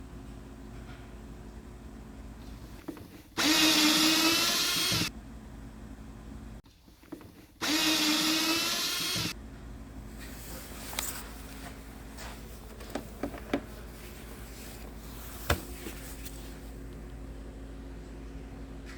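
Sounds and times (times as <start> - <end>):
cordless drill motor whine: 3.4 - 5.1, 7.6 - 9.4.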